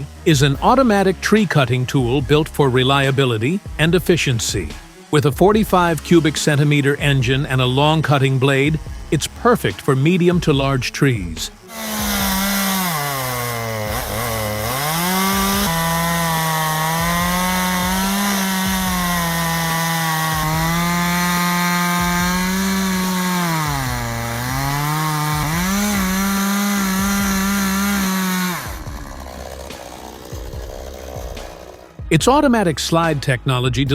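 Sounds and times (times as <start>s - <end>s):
chainsaw sawing wood: 0.0s - 33.2s.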